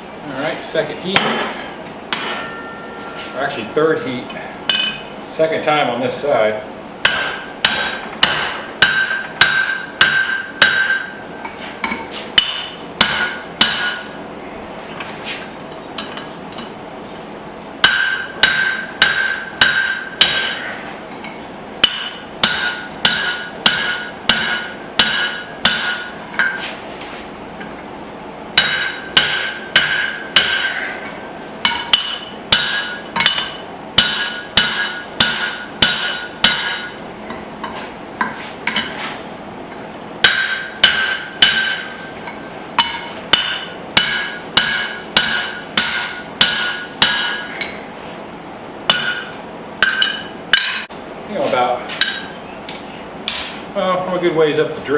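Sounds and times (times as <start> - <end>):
hammer striking steel on anvil: 1.1 - 4.1, 4.7 - 5.2, 7.0 - 14.2, 17.8 - 26.8, 28.6 - 39.0, 40.2 - 47.8, 48.9 - 51.0, 51.9 - 53.6.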